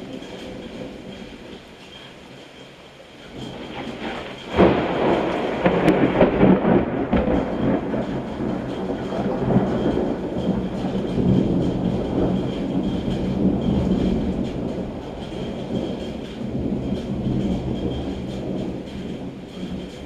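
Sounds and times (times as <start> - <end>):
rolling thunder rumble: 3.2 - 20.0
thunder crack: 3.3 - 20.0.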